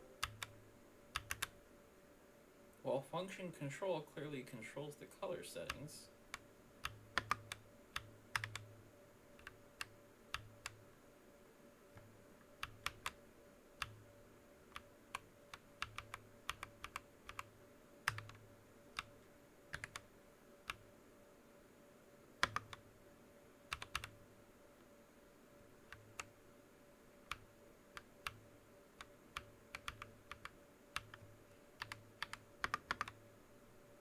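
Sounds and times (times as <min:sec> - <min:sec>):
mechanical keyboard keystrokes: 0:01.2 - 0:01.6, 0:05.7 - 0:08.7, 0:12.6 - 0:13.2, 0:14.8 - 0:17.5, 0:19.7 - 0:20.0, 0:22.4 - 0:22.8, 0:23.7 - 0:24.1, 0:29.0 - 0:33.2.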